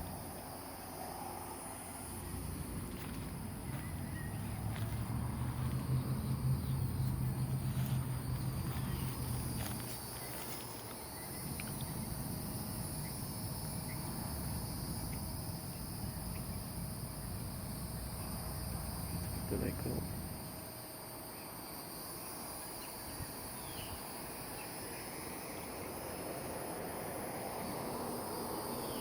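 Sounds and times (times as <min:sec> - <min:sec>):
low hum: 0:00.0 - 0:20.8
cicadas chorus: 0:00.0 - 0:29.0.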